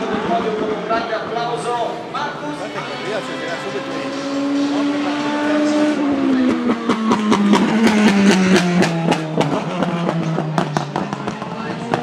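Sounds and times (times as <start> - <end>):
race car engine revving: 0.0 - 12.0.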